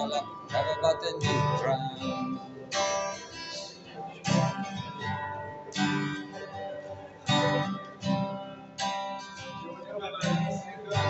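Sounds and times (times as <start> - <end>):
acoustic guitar strumming chords: 0.0 - 11.0.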